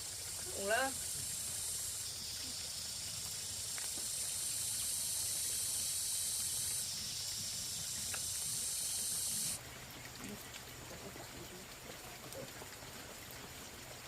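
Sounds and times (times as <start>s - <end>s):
high-pitched insect chorus: 0.0s - 9.6s.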